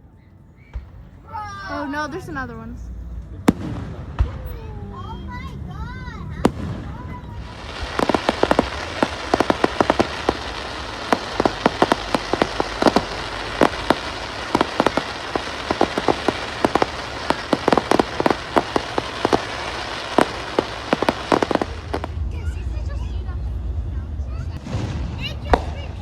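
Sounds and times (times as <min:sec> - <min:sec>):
fireworks crackling: 0:06.3 - 0:23.2, 0:24.5 - 0:26.0.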